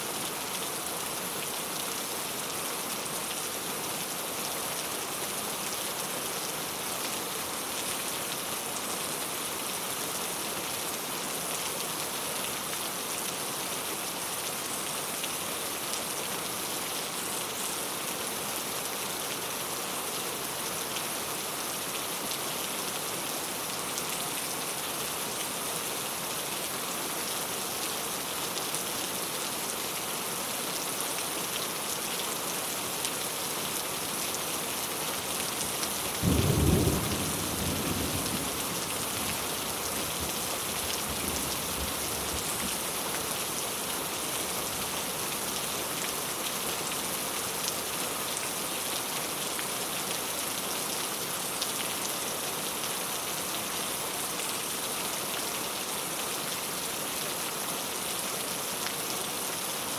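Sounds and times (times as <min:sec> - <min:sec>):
rain on a tile roof: 0:00.0 - 0:59.9.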